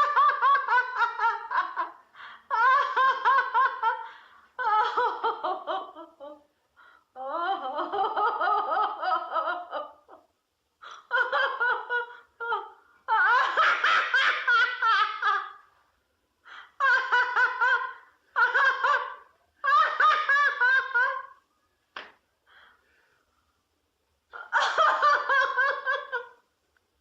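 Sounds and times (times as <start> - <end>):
woman laughing: 0.0 - 6.4, 7.2 - 10.2, 10.8 - 15.6, 16.5 - 21.4, 24.3 - 26.4.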